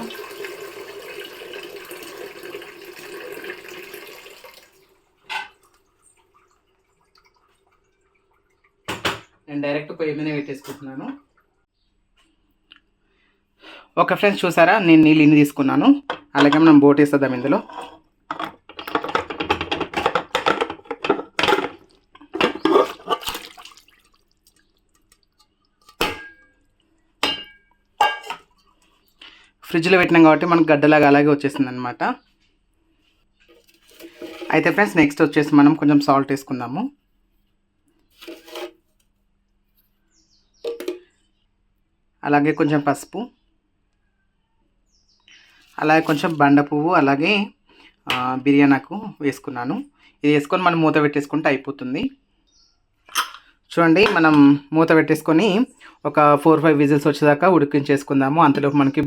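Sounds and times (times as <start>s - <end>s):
tap water running into a pot: 0.0s - 9.2s, 20.8s - 26.1s, 33.6s - 35.2s, 45.8s - 46.4s
meat splashing into pot of water: 22.9s - 26.2s.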